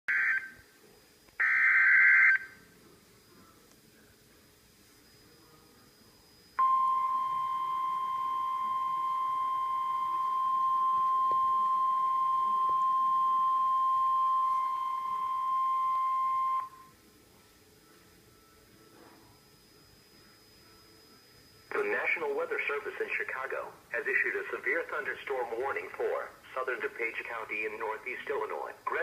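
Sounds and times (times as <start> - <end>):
steady high alarm beep: 0.1 - 0.6, 1.4 - 2.6, 5.0 - 17.0.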